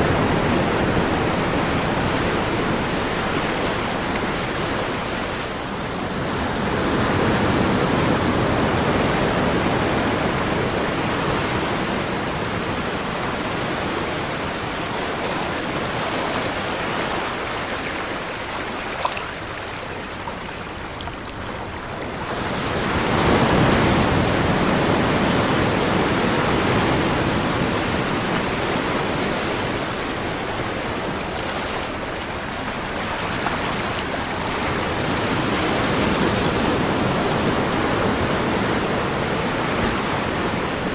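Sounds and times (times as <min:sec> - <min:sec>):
ocean waves washing on shore: 0:00.0 - 0:40.9.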